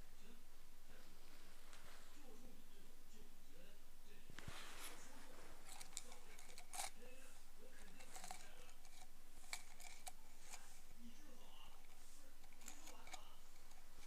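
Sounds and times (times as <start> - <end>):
ear pick scraping ear canal: 4.3 - 14.0.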